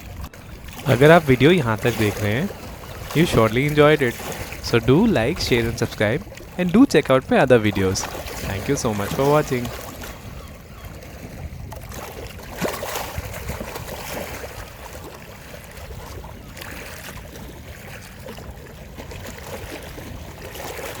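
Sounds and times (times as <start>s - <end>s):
lake waves lapping at shore: 0.0s - 21.0s
wind rumbling on microphone: 8.0s - 14.8s.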